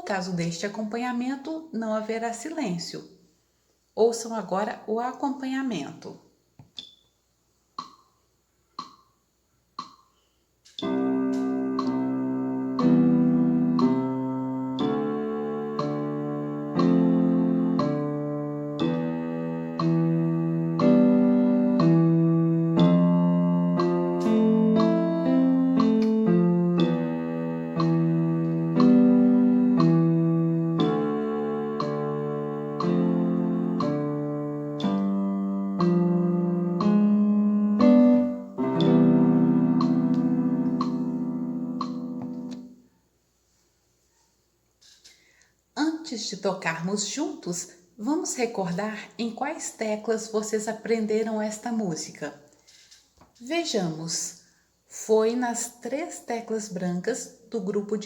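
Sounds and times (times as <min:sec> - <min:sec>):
metronome clicks: 0:06.8 - 0:07.1, 0:07.8 - 0:08.2, 0:08.8 - 0:09.2, 0:09.8 - 0:42.7
electronic keyboard chords: 0:10.8 - 0:42.8.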